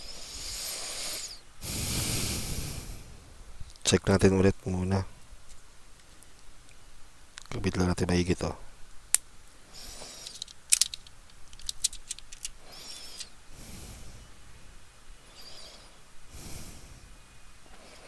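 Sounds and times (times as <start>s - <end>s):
laptop parts clicking and scraping: 9.9s - 13.3s
sharp click: 10.2s - 13.3s.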